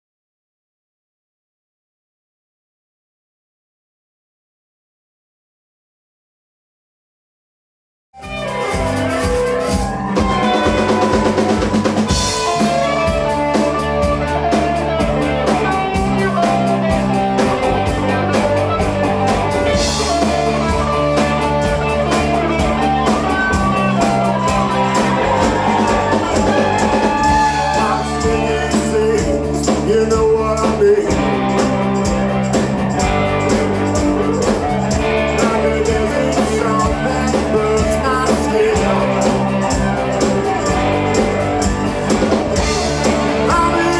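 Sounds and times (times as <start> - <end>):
rock band playing: 8.2 - 43.9.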